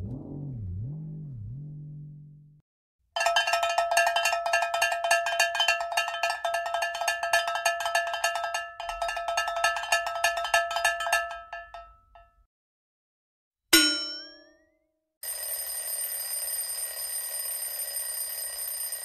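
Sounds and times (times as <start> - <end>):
small metal bell clanging rapidly: 3.2 - 12.3, 15.2 - 19.0.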